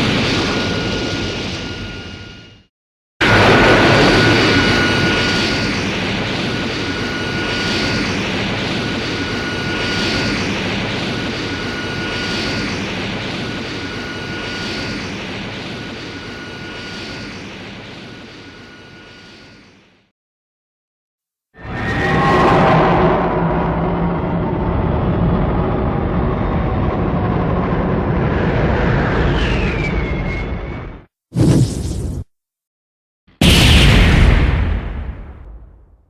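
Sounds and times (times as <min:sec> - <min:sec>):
loud rushing noise with high whine: 0:00.0 - 0:19.8.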